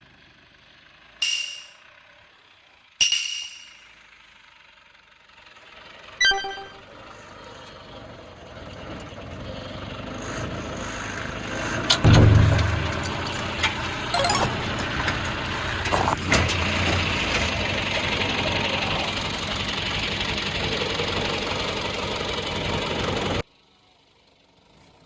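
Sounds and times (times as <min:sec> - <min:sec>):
tractor engine: 0:00.2 - 0:23.4
sharp metallic clanks: 0:01.2 - 0:01.8, 0:03.0 - 0:04.0, 0:12.0 - 0:15.0.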